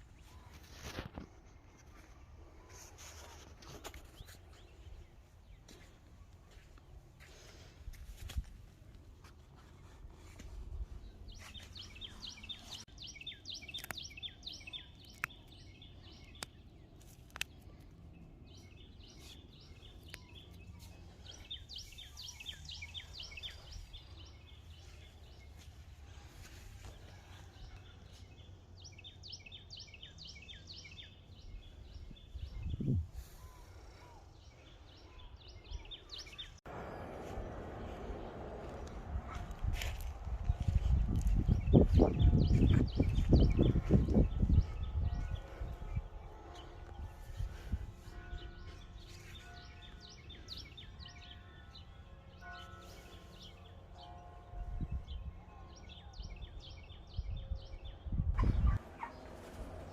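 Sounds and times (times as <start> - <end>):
songbird chirping: 0.0 - 59.9
low steady rumble: 36.7 - 48.6.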